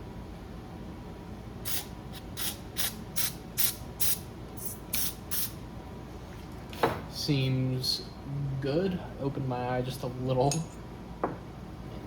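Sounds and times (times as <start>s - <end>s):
aerosol spray bursts: 1.6s - 4.2s, 4.9s - 5.5s.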